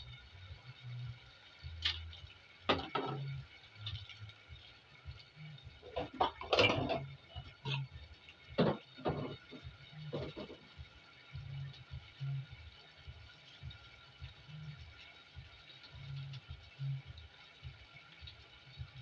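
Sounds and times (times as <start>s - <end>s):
spoon knocking and scraping pot: 5.8s - 7.8s, 8.6s - 10.7s.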